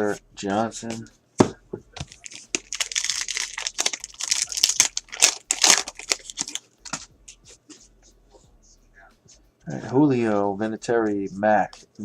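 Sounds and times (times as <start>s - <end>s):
foil wrapper crinkling: 2.0s - 7.1s.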